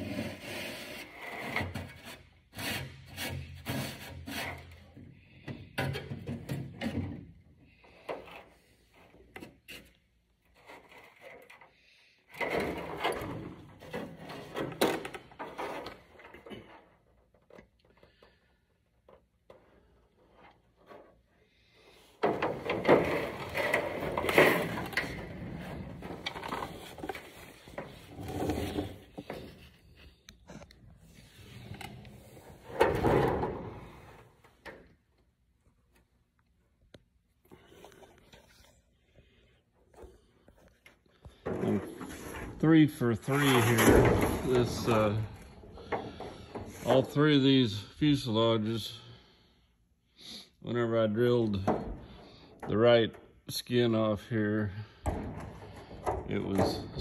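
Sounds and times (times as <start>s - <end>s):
sheet metal scraping and clattering: 22.2s - 30.2s.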